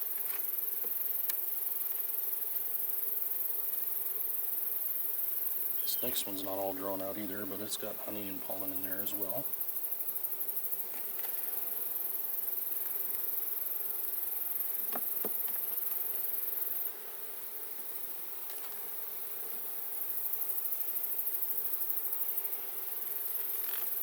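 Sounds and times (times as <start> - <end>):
bees buzzing: 5.7 - 9.5.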